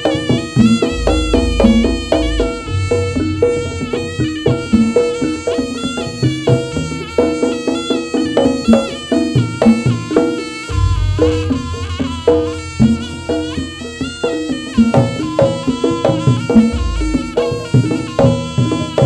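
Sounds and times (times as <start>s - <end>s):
hand drum beats: 0.0s - 19.0s
reedy shawm melody: 0.0s - 19.0s
struck metal tones: 0.6s - 5.6s, 10.6s - 13.8s, 16.7s - 17.7s
deep boom: 0.9s - 4.4s, 10.7s - 13.1s.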